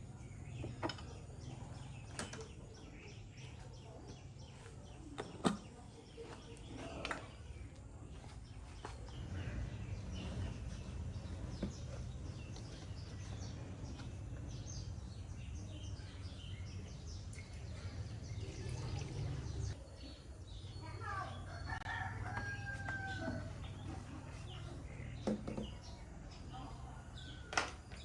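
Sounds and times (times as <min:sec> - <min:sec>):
rooster crowing: 0:21.5 - 0:23.5.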